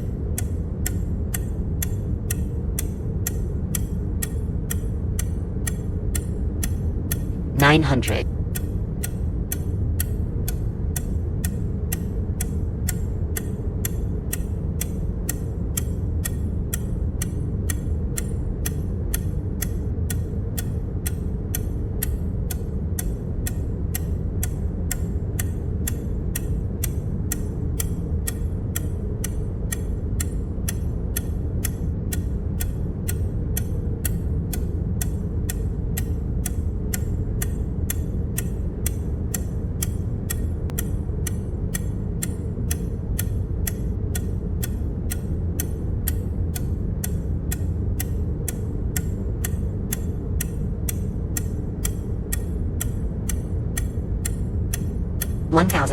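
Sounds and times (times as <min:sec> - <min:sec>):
clock ticking: 0:00.0 - 0:55.9
low hum: 0:00.0 - 0:55.9.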